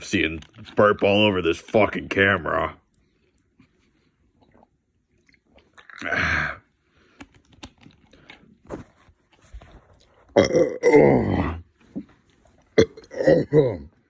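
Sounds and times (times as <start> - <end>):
gulping and swallowing: 3.3 - 6.8, 10.2 - 14.0
long loud burp: 5.8 - 6.6, 10.4 - 11.7, 12.8 - 13.9.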